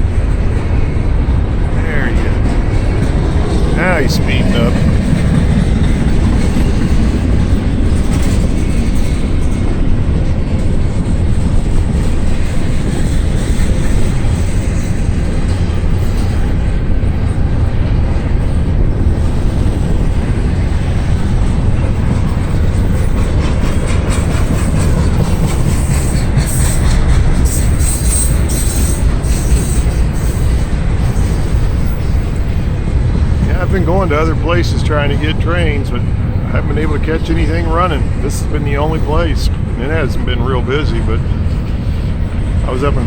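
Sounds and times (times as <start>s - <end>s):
freight train rolling past: 0.0s - 43.0s
wind buffeting microphone: 0.0s - 43.0s
wheels clicking over rail joints: 19.6s - 38.2s.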